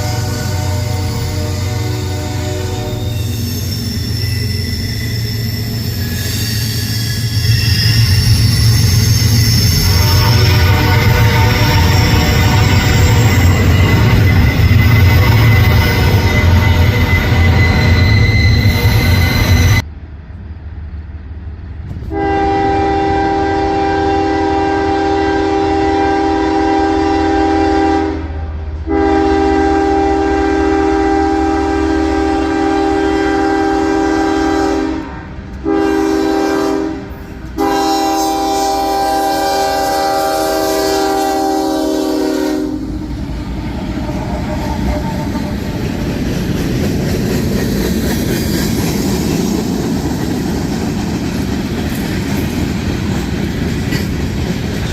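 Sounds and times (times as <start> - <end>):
locomotive air horn: 0.0 - 3.7, 9.4 - 19.8, 22.1 - 45.7
train rumbling on rails: 0.0 - 54.9.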